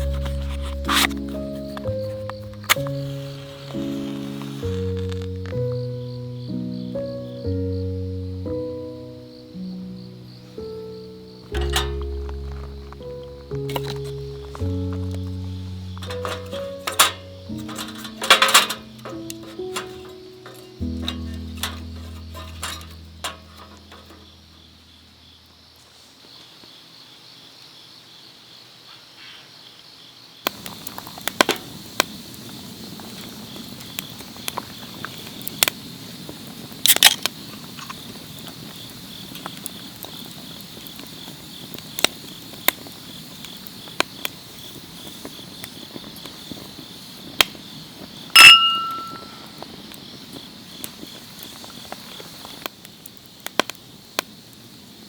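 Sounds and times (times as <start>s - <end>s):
campfire crackling and popping: 0.0s - 6.1s, 11.1s - 25.6s, 30.4s - 55.0s
crickets chirping: 0.0s - 55.0s
metallic clink: 11.6s - 12.1s, 16.0s - 24.6s, 48.4s - 49.4s.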